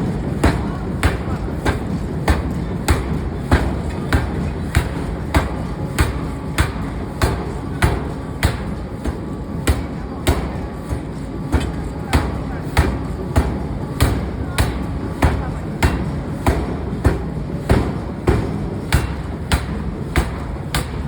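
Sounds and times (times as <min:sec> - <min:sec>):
workshop machinery noise: 0:00.0 - 0:21.0
forging hammer blows on metal: 0:00.2 - 0:21.0.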